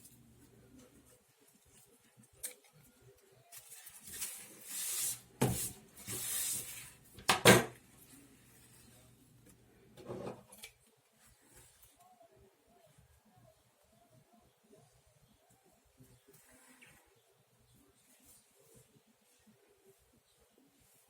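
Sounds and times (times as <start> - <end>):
woven palm rustling: 10.8 - 21.0.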